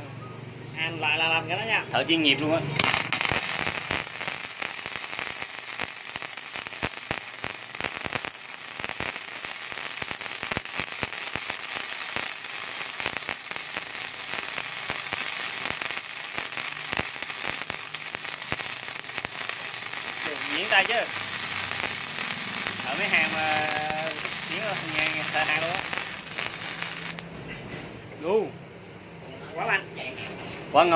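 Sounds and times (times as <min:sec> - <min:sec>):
welding arc crackling and popping: 0:02.8 - 0:27.3.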